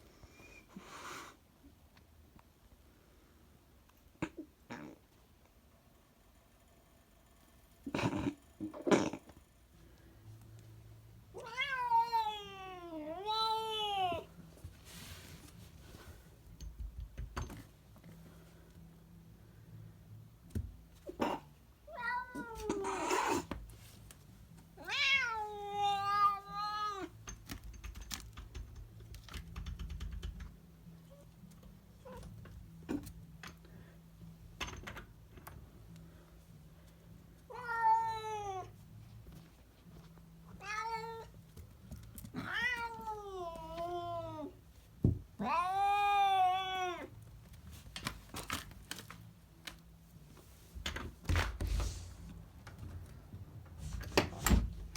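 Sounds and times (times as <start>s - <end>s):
cat meowing: 11.4s - 14.2s, 21.2s - 23.5s, 24.8s - 27.1s, 37.5s - 38.7s, 40.6s - 41.3s, 42.4s - 44.5s, 45.4s - 47.1s.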